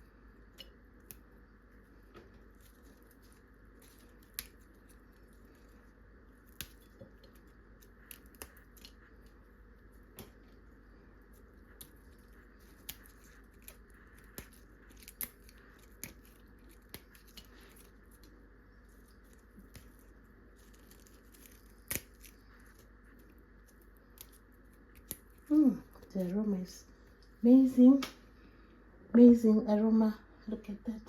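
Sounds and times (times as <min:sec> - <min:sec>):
leaves snapping off stems: 0:02.6 - 0:05.6, 0:06.4 - 0:09.4, 0:11.8 - 0:26.5.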